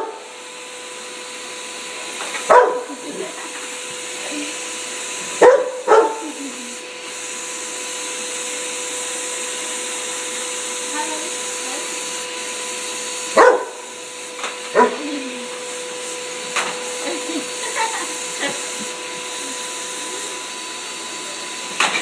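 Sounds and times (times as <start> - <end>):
vacuum cleaner motor whine: 0.0 - 22.0
dog barking: 2.5 - 3.0, 5.4 - 6.3, 13.3 - 13.9, 14.8 - 15.0.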